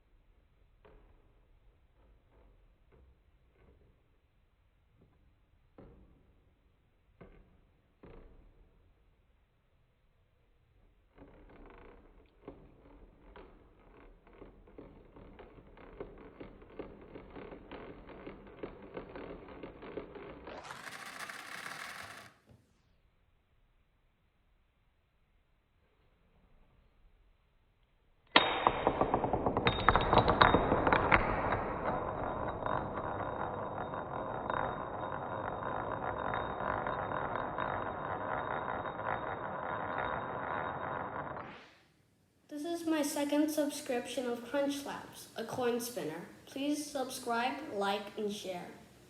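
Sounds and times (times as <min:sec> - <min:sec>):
toy spinner rattling whir: 0:17.2 - 0:22.4
toy ratchet clicking: 0:20.6 - 0:22.4.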